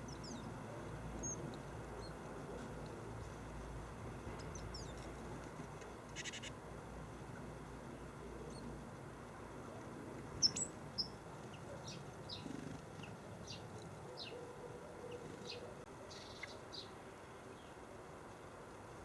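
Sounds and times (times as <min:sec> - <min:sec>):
small birds chirping: 0:00.0 - 0:02.7, 0:04.3 - 0:05.3, 0:06.1 - 0:06.6, 0:10.3 - 0:17.8.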